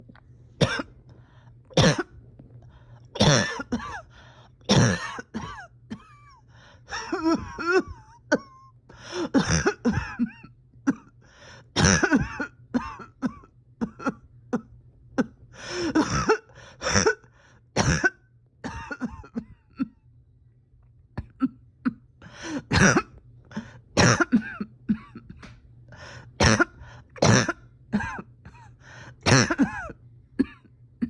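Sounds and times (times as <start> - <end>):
person clearing throat: 0.6 - 0.9, 1.7 - 2.2, 3.2 - 4.1, 4.7 - 11.1, 11.8 - 17.2, 17.8 - 20.0, 21.2 - 25.5, 26.4 - 30.7
person coughing harshly: 0.6 - 0.9, 1.7 - 2.2, 3.2 - 4.1, 4.7 - 11.1, 11.8 - 20.0, 21.2 - 25.5, 26.1 - 30.7.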